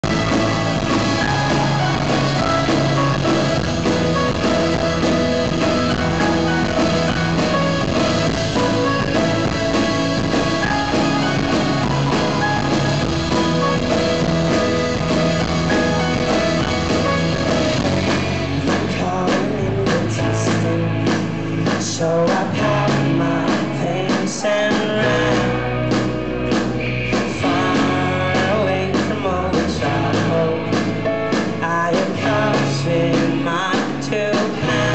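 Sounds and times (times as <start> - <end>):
live folk-rock band playing: 0.0 - 34.9.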